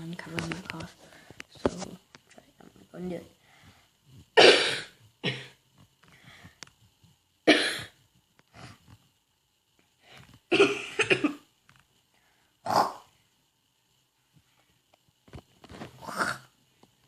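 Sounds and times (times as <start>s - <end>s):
person coughing: 4.4s - 5.6s, 7.5s - 8.0s, 10.5s - 11.4s.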